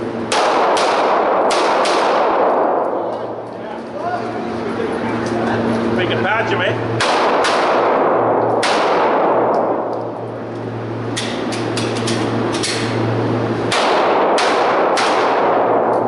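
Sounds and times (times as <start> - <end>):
pistol shots echoing: 0.3 - 2.9, 7.0 - 9.8, 13.7 - 16.0.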